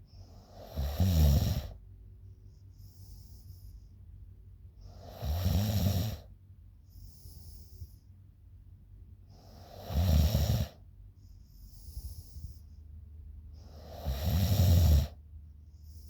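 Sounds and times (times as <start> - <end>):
faint hissing breath: 0.0 - 8.2, 9.2 - 16.0
woman snoring: 0.6 - 1.8, 5.0 - 6.2, 9.5 - 10.8, 13.6 - 15.2.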